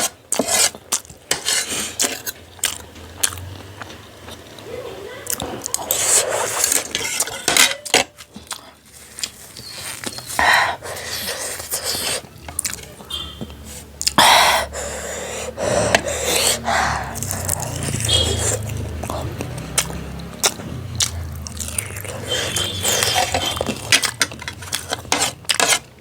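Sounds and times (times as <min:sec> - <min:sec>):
person eating noodles: 0:05.3 - 0:07.5, 0:08.2 - 0:26.0
hissing breaths and snorts: 0:10.3 - 0:12.3, 0:13.8 - 0:20.2.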